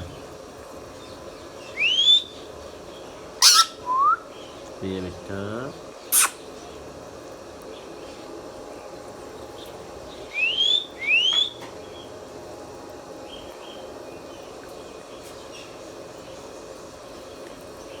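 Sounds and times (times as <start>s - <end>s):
parrot calling: 1.0s - 2.5s, 3.1s - 4.6s, 6.0s - 6.6s, 10.3s - 12.1s.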